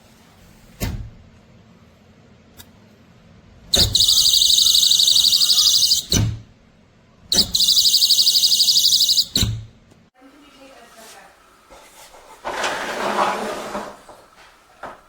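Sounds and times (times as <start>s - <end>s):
door alarm siren: 3.8s - 6.3s, 7.3s - 9.6s.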